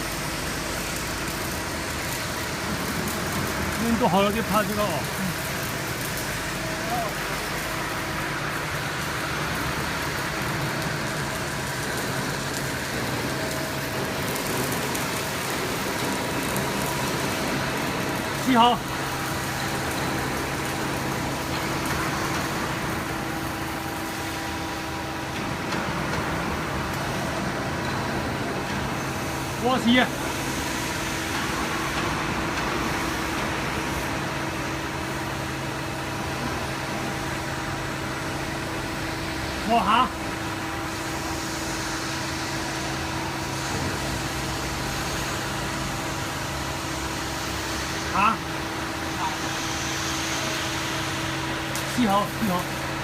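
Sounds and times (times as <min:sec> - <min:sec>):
machinery hum: 0:00.0 - 0:53.0.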